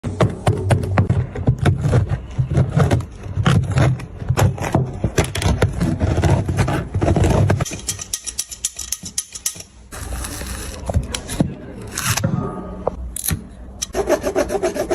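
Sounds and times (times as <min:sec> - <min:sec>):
sharp clicks and knocks: 0:00.2 - 0:09.9.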